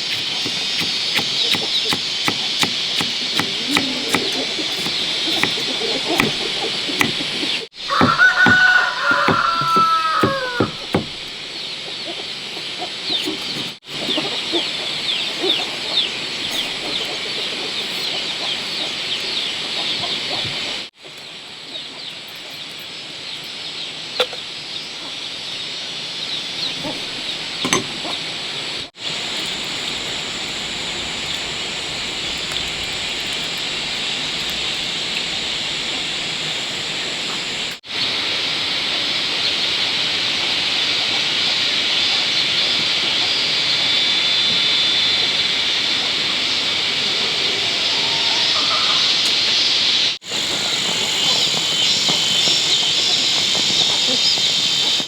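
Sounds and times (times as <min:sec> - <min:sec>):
chickens clucking: 0:00.0 - 0:20.9, 0:47.8 - 0:49.6
birds chirping: 0:00.0 - 0:38.1, 0:40.7 - 0:55.0
high insect drone: 0:42.8 - 0:55.0.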